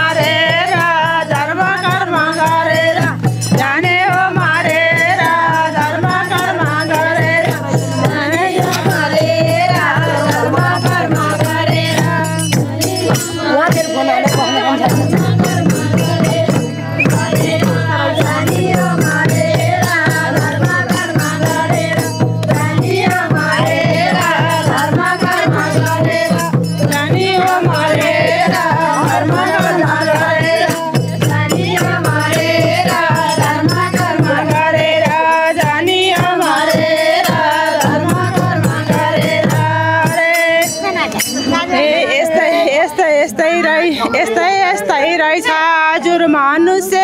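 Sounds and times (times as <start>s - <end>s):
hand drum rhythm: 0.0s - 45.6s
jingling rattling percussion: 0.0s - 47.0s.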